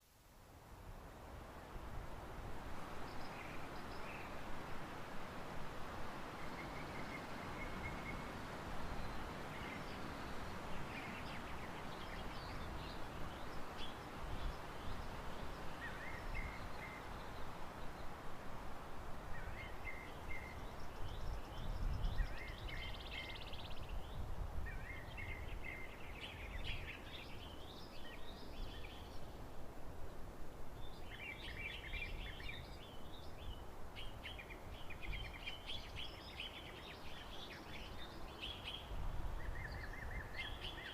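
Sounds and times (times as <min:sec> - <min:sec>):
birds chirping and trilling: 0:30.8 - 0:40.9.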